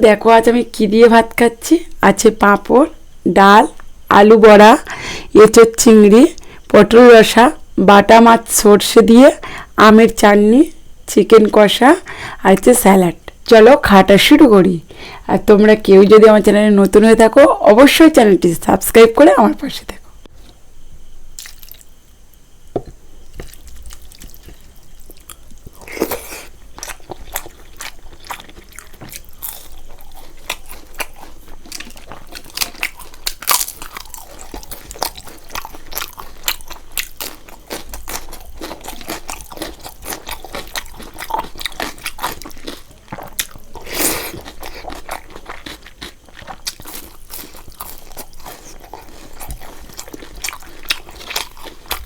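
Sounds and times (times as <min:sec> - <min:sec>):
person chewing crunchy food: 0:21.4 - 0:52.0.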